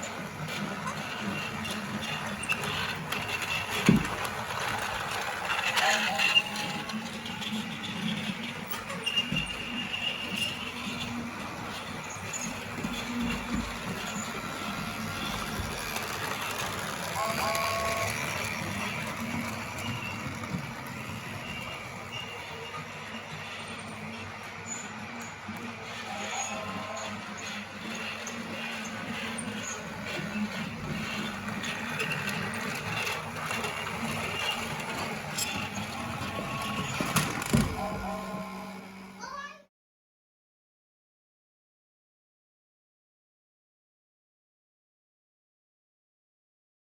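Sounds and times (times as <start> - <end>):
light clicks of plastic track: 0.0 - 22.4, 28.0 - 37.9
toy train whirring: 0.0 - 39.6.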